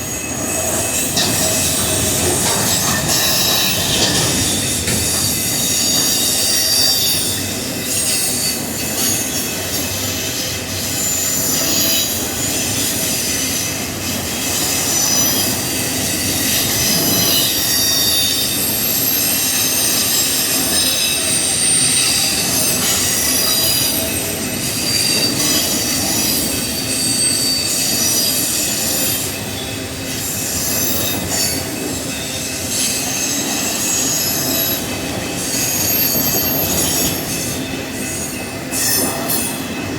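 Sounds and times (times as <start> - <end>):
rumble of wheels on rail: 0.0 - 39.9
high-pitched wheel squeal: 24.7 - 29.1.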